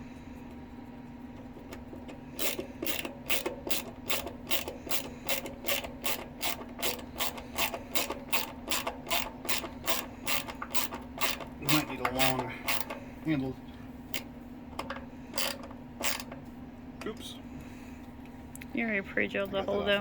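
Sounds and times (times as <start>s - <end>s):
hand ratchet clicking: 2.4s - 13.0s, 14.1s - 16.4s.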